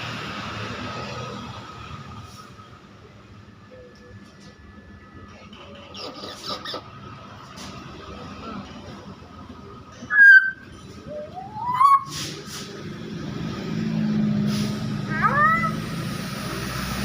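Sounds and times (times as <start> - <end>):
myna whistling: 10.1 - 12.3.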